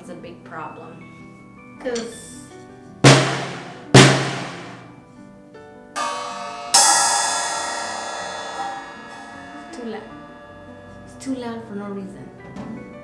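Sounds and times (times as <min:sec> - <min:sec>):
cymbal crash: 0:03.1 - 0:04.9, 0:06.0 - 0:10.8
drum struck with low tone: 0:03.1 - 0:04.9.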